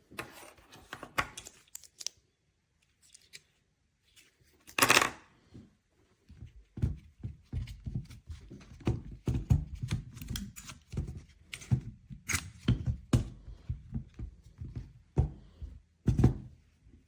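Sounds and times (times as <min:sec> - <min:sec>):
small objects clicking and rustling: 0:01.4 - 0:02.2.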